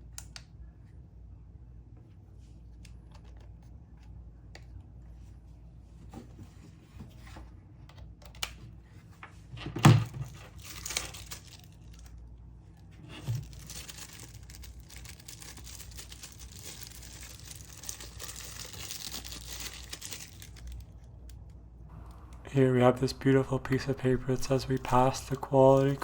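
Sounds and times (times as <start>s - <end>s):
paper and packaging rustling: 10.1s - 12.2s, 12.8s - 21.5s, 23.0s - 26.0s.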